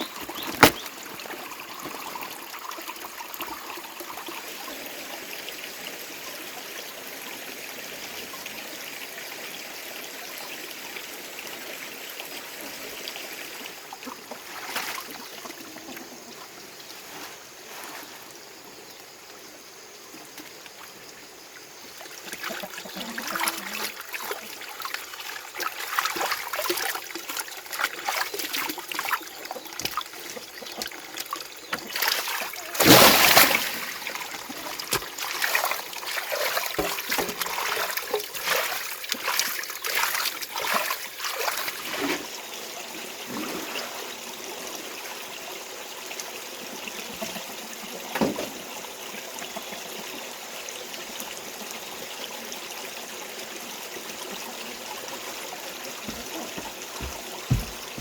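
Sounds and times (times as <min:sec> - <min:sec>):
water trickling: 0:00.0 - 0:06.9, 0:18.9 - 0:47.8, 0:53.7 - 0:58.0
water splashing: 0:22.2 - 0:42.2.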